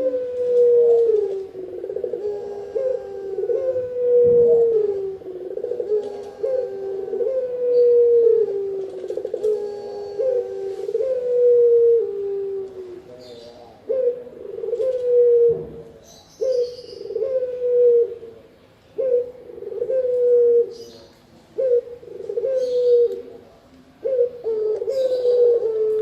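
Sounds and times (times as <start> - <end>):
dove cooing: 0.0 - 26.0
small birds chirping: 12.7 - 13.9, 15.8 - 17.4, 20.7 - 26.0.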